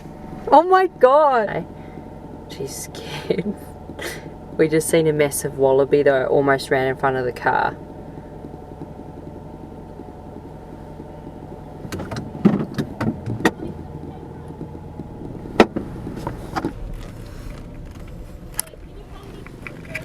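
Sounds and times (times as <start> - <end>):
car engine hum inside cabin: 0.0 - 20.0
sharp clicks and knocks: 8.4 - 20.0.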